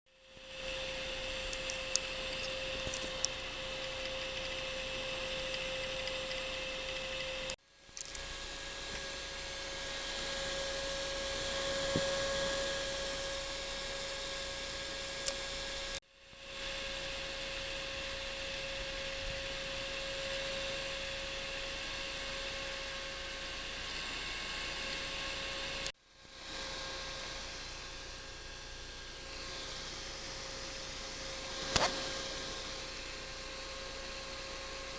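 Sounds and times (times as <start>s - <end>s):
small electric fan whining: 0.1s - 34.9s
hiss: 8.6s - 34.9s.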